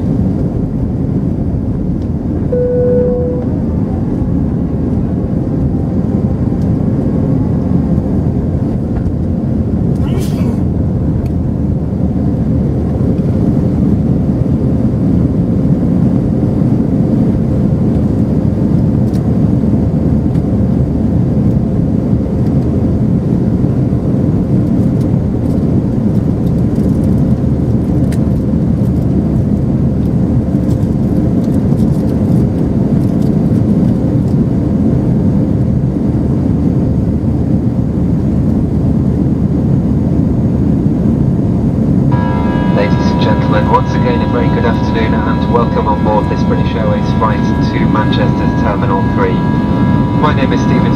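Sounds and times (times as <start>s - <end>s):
aircraft cabin engine rumble: 0.0s - 50.9s
faint steady hum: 1.5s - 7.1s, 41.6s - 50.9s.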